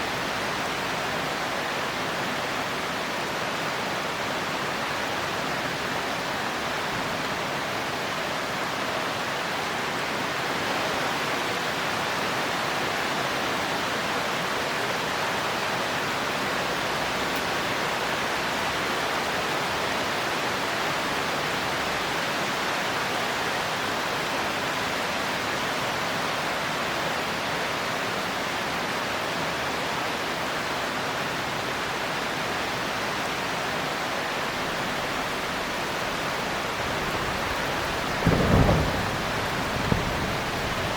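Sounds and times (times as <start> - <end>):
heavy rain hissing: 30.8 - 40.9.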